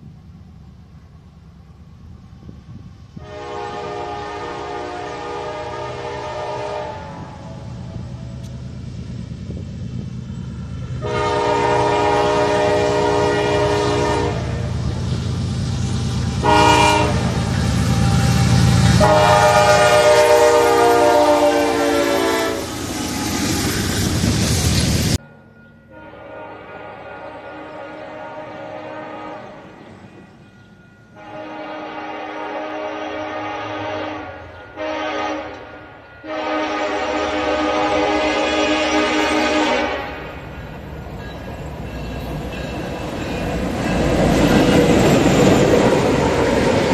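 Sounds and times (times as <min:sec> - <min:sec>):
low rumble of train: 0:00.0 - 0:46.9
locomotive horn blasts: 0:03.2 - 0:08.3, 0:11.0 - 0:14.8, 0:16.4 - 0:22.7, 0:25.9 - 0:29.7, 0:31.1 - 0:40.4.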